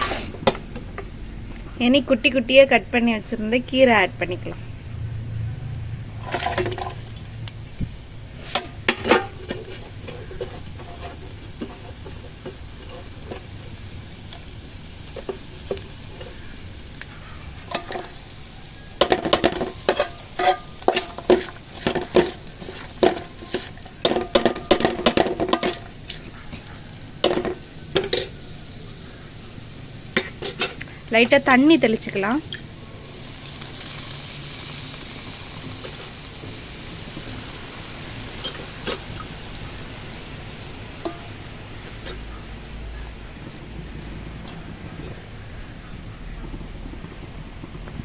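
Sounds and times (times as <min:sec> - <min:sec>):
oil sizzling: 0:00.0 - 0:48.0
spatula stirring and scraping: 0:08.3 - 0:29.1.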